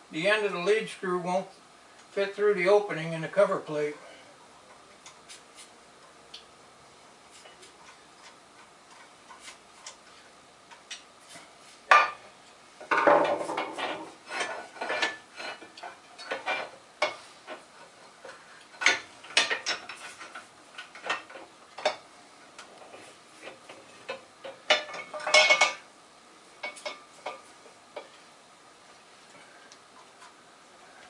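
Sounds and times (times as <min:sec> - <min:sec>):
metal scraping rattle: 0:12.9 - 0:22.0
metal clinks and knocks: 0:23.5 - 0:25.8.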